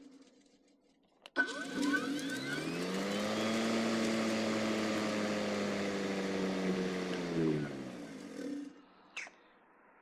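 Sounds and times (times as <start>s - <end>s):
lawnmower motor and blade humming: 1.4s - 8.8s.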